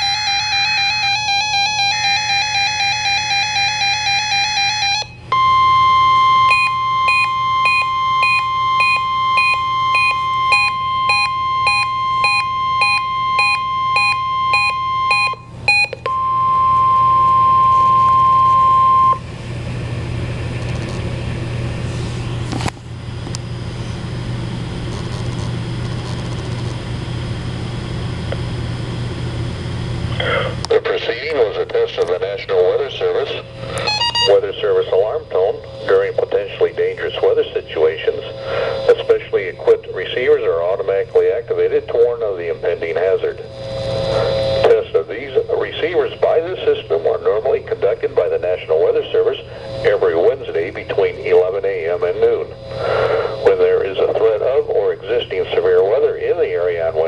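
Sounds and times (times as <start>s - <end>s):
high-pitched alarm tone: 0.0s - 19.2s, 33.8s - 35.1s
regular beeping: 0.0s - 19.2s, 33.6s - 34.6s
radio hiss: 30.2s - 57.0s
low hum: 40.6s - 56.2s.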